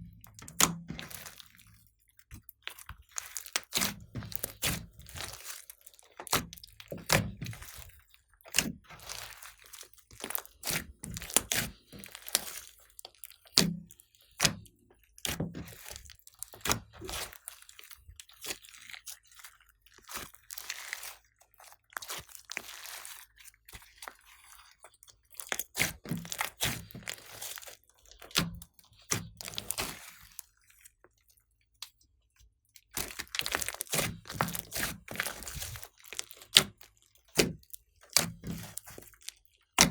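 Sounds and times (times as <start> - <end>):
slime crackling and popping: 0.0 - 14.6, 15.2 - 19.2, 25.2 - 30.5, 32.9 - 39.9.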